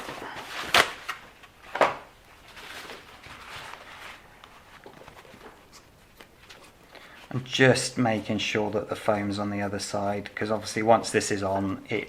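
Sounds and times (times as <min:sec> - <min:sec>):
faint rustling handling noise: 0:00.0 - 0:12.0.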